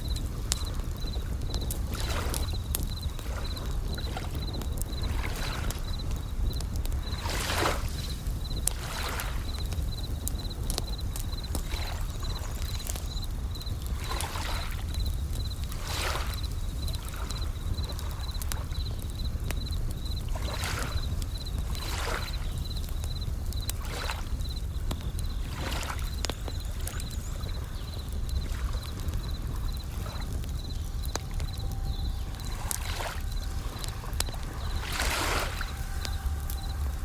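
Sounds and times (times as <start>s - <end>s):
waves washing: 0.0s - 18.7s, 20.3s - 22.3s, 28.4s - 37.0s
campfire crackling and popping: 0.0s - 37.0s
cricket chirping: 0.0s - 37.0s
steady low rumble: 26.5s - 37.0s.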